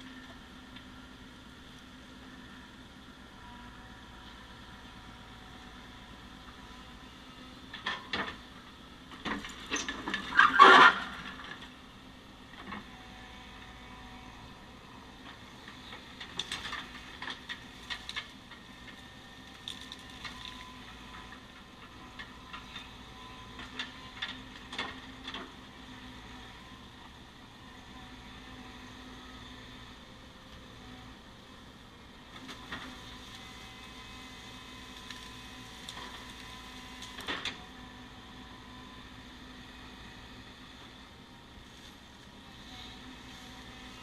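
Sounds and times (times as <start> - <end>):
engine humming: 0.0 - 44.0.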